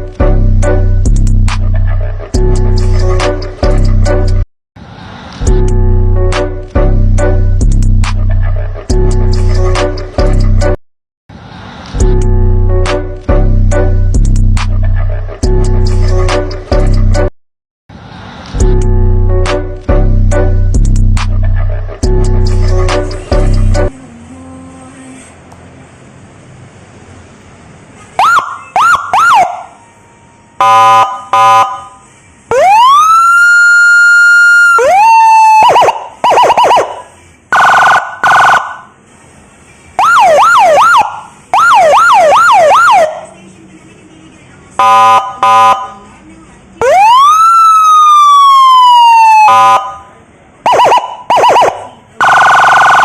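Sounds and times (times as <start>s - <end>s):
buzzy siren horn blasts: 5.5s - 7.5s, 12.1s - 14.0s, 18.7s - 20.7s, 30.6s - 32.0s, 44.8s - 46.0s, 49.2s - 50.0s, 50.7s - 53.0s
siren wail: 28.2s - 29.9s, 30.6s - 38.9s, 40.0s - 43.2s, 44.8s - 46.0s, 46.8s - 50.1s, 50.7s - 53.0s
rising siren chirps: 28.2s - 39.0s, 40.0s - 43.2s, 46.8s - 50.1s, 50.7s - 53.0s.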